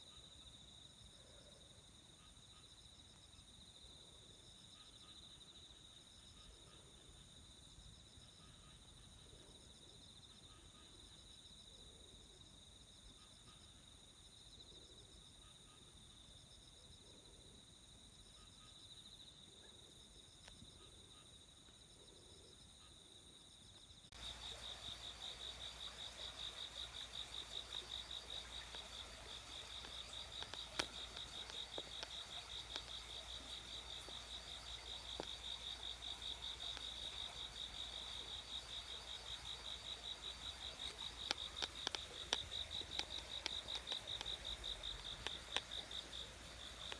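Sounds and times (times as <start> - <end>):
crickets chirping: 0.0 - 46.9
sharp clicks: 40.8 - 45.8.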